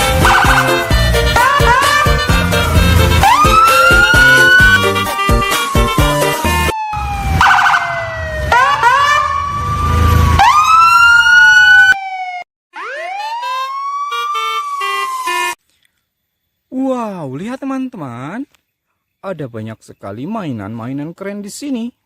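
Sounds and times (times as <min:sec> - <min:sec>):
background music with a beat: 0:00.0 - 0:06.8
siren-like wailing effects: 0:00.0 - 0:15.6.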